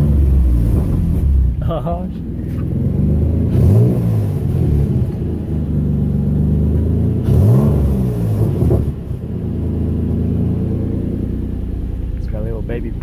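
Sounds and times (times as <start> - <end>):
exhaust pops: 0.0 - 9.7
car engine revving: 0.0 - 13.0.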